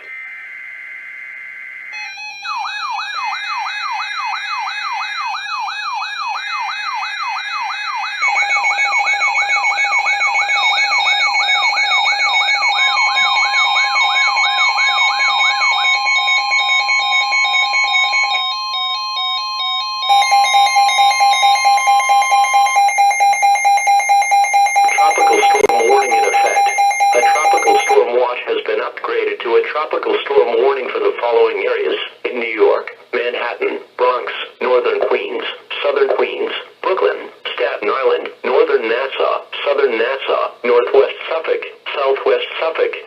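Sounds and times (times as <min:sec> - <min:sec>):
wailing siren sweep: 0:00.0 - 0:28.0
long steady alarm tone: 0:00.0 - 0:28.1
pulsing alternating alarm tones: 0:00.0 - 0:28.1
steady high electronic beep: 0:20.1 - 0:28.0.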